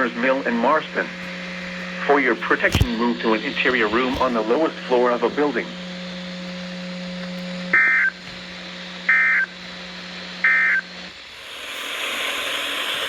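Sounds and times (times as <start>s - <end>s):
radio hiss: 0.0s - 5.7s, 10.4s - 13.0s
steady hum: 0.0s - 13.0s.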